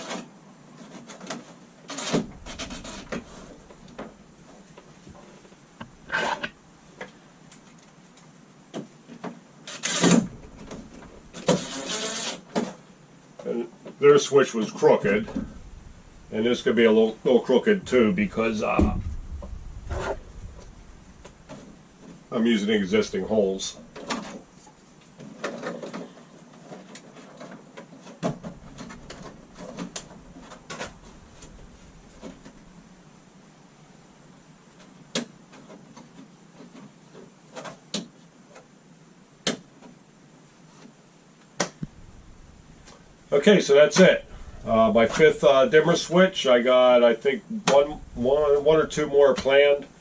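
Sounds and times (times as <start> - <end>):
scraping rubs on switch plate: 0.0 - 4.0, 9.8 - 12.6.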